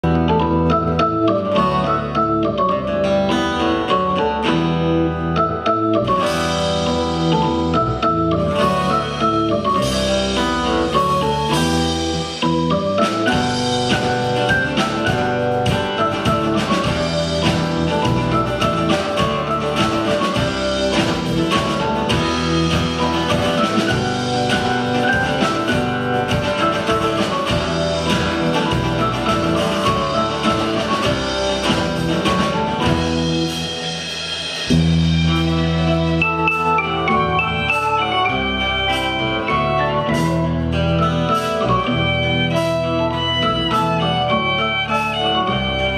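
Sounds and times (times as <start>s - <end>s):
instrumental band music: 0.0s - 45.9s
drum beat: 9.8s - 39.3s.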